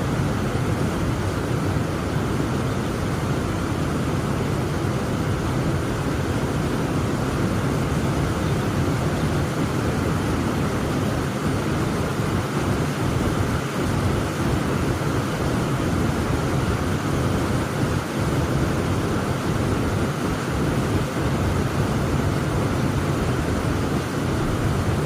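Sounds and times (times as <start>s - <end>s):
heavy rain falling: 8.8s - 25.0s.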